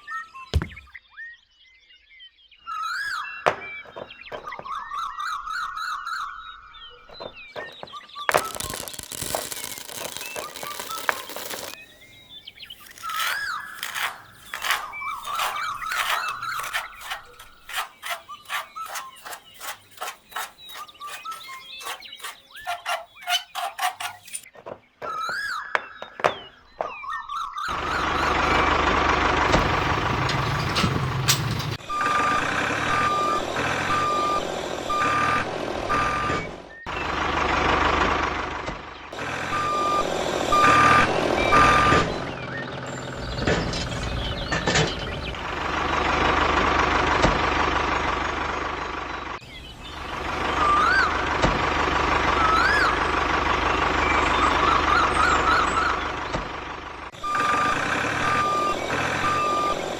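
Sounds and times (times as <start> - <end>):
vehicle engine running: 8.3 - 18.6, 27.7 - 59.9
reversing alarm beeping: 29.5 - 36.6, 39.5 - 42.4, 57.2 - 59.9.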